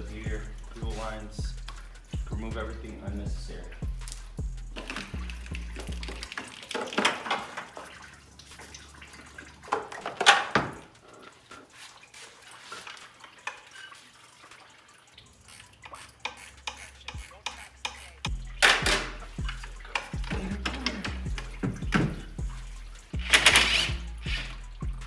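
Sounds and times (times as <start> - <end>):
tools clattering on hoses: 0.0 - 14.3, 15.6 - 25.0
scraping rustle: 4.0 - 14.3, 18.2 - 25.0.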